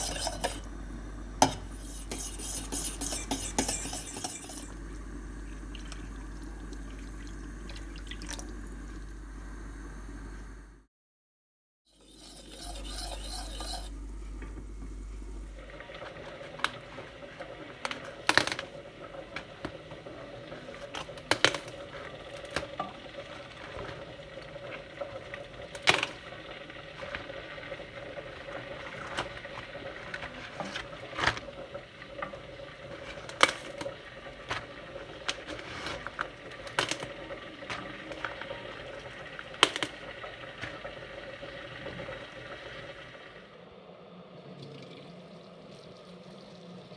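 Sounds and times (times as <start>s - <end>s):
utensils clinking against dishes: 0.0s - 0.8s, 1.4s - 4.8s, 12.0s - 14.0s
steady hum: 0.0s - 10.9s, 12.1s - 16.0s.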